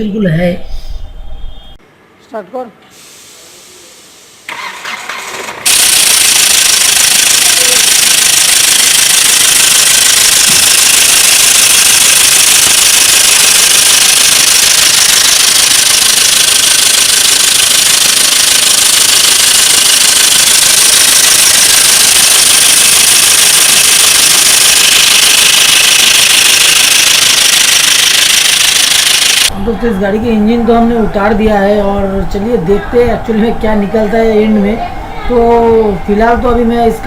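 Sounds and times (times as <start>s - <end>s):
metallic valvetrain clicking: 5.7s - 29.5s.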